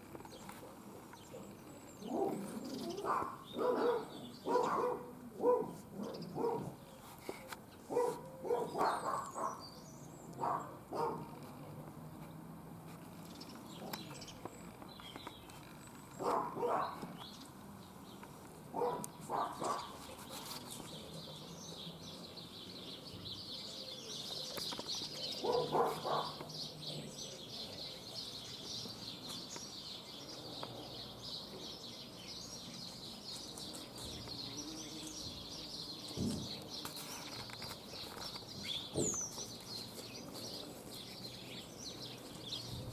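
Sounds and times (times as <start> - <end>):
small birds chirping: 0.0 - 42.9
foxes barking: 0.7 - 6.8, 7.9 - 9.7, 10.3 - 11.4, 16.2 - 17.2, 18.7 - 20.0, 25.4 - 26.5.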